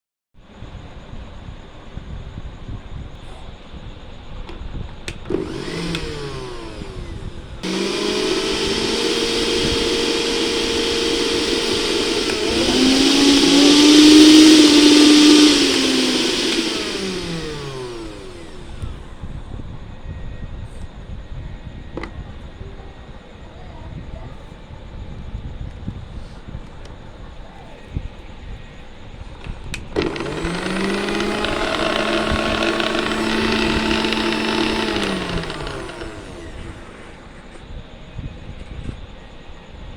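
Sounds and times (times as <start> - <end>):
mixer grinder motor whine: 5.1 - 19.2, 29.9 - 37.3.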